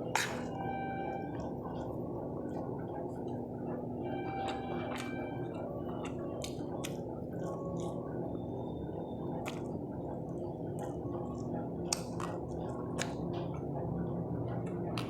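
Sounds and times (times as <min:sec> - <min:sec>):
wet chewing and mouth smacks: 0:04.5 - 0:08.1, 0:09.4 - 0:09.9, 0:10.6 - 0:13.6.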